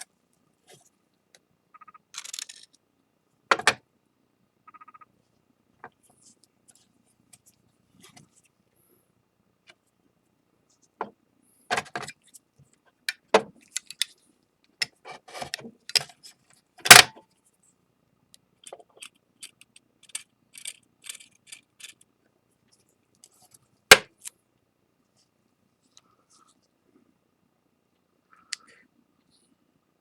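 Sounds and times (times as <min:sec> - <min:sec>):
small objects clicking and clattering: 0:02.2 - 0:02.8, 0:18.6 - 0:22.1.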